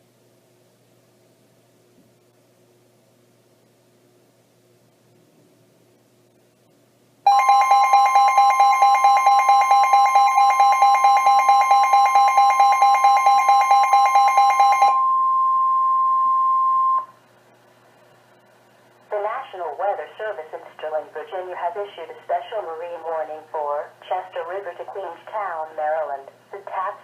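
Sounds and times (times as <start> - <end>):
two-note alarm pulsing: 7.3 - 17.1.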